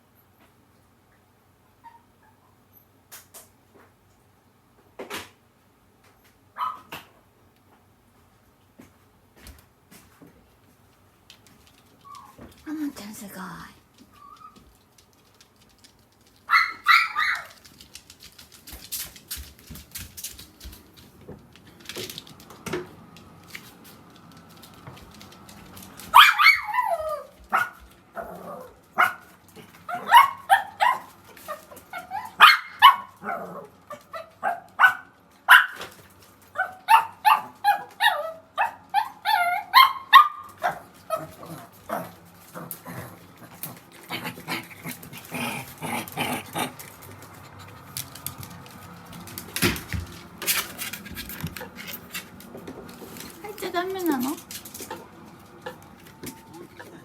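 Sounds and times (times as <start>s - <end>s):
small dogs barking: 6.6s - 7.0s, 16.4s - 17.7s, 26.0s - 35.9s, 36.5s - 48.0s.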